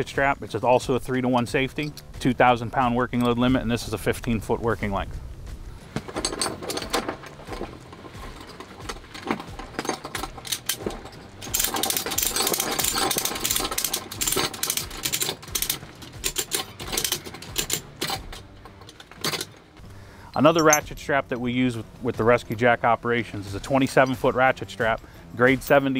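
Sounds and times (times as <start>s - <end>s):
ratchet strap clicking and rattling: 1.3s - 3.5s, 5.9s - 21.0s.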